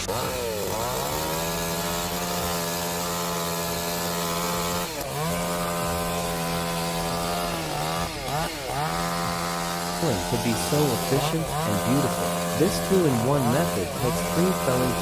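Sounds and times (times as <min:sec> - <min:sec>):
chainsaw running at high revs: 0:00.0 - 0:15.0.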